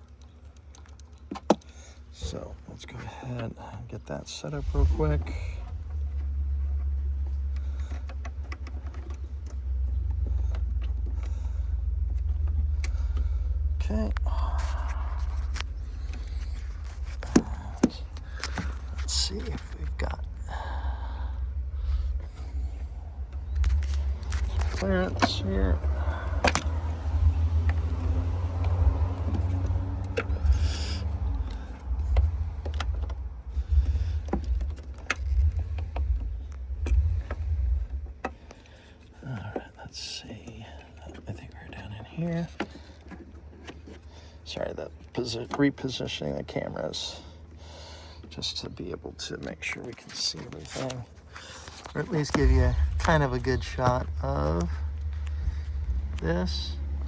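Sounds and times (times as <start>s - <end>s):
steady low rumble: 1.7s - 45.3s, 48.4s - 57.0s.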